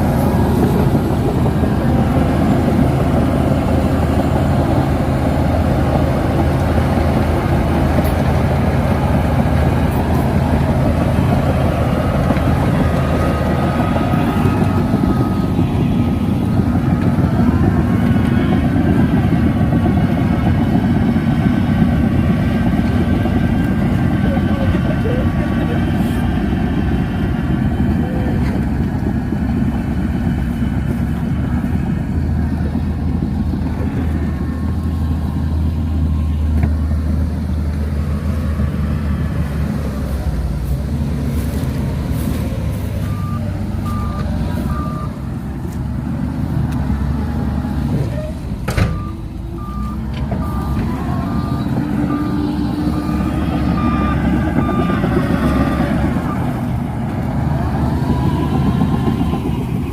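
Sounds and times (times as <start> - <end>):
bulldozer diesel engine running: 0.0 - 59.9
reversing alarm beeps: 48.9 - 56.6.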